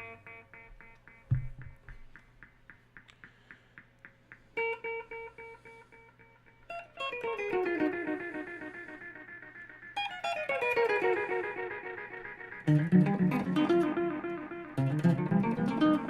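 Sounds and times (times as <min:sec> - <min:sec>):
guitar notes with echoes: 0:00.0 - 0:16.0.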